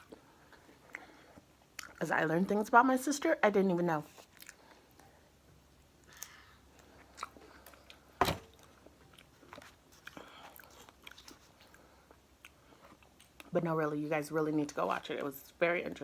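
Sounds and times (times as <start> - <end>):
chewing and wet mouth sounds: 0.0 - 2.5, 4.1 - 13.7.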